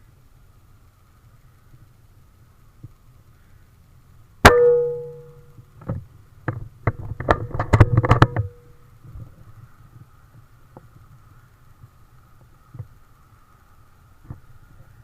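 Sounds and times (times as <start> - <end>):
metallic clicks and knocks: 4.5 - 8.6.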